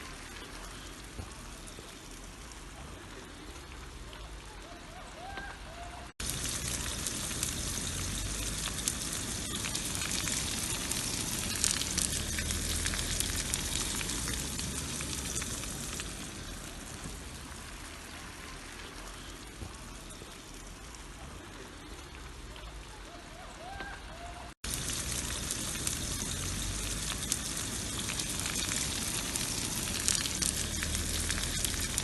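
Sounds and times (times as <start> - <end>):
sausage sizzling in oil: 6.1 - 22.4, 24.6 - 32.0.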